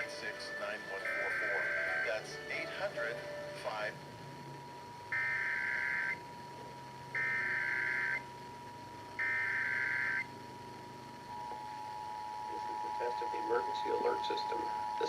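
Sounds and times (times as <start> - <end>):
steady faint tone: 0.0 - 15.0
two-tone attention signal: 0.9 - 2.9
warbling digital data bursts: 5.0 - 6.2, 7.1 - 8.2, 9.2 - 10.3.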